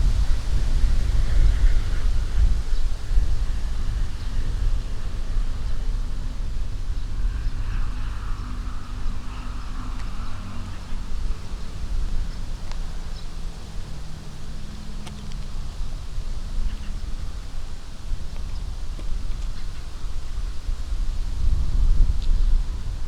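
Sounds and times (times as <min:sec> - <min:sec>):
leaves rustling in wind: 0:00.0 - 0:23.0
wind rumble on microphone: 0:00.0 - 0:23.0.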